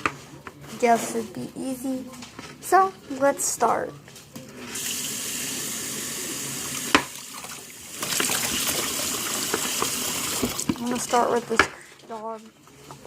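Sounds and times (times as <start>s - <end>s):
tap water running into sink: 4.8s - 11.7s.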